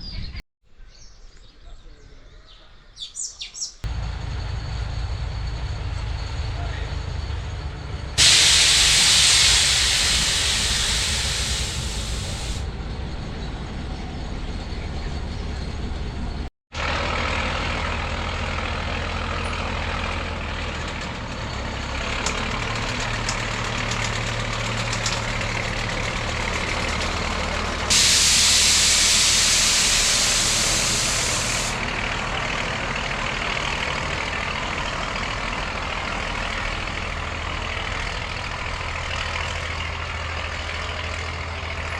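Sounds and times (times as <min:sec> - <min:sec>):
train engine rumble: 0:03.8 - 0:41.9
pressure release hiss: 0:08.2 - 0:12.6, 0:27.9 - 0:31.8.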